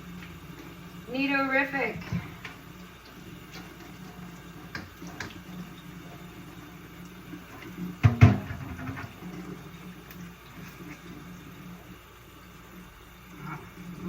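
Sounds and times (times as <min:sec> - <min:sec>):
water splashing: 0:00.0 - 0:12.0
part knocking on basin: 0:08.0 - 0:09.1.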